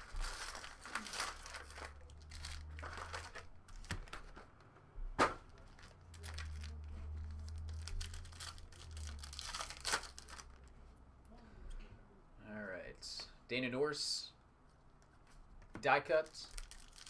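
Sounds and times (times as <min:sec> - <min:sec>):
plastic wrapping crinkling and tearing: 0:00.0 - 0:04.1, 0:05.6 - 0:10.7, 0:16.2 - 0:17.0.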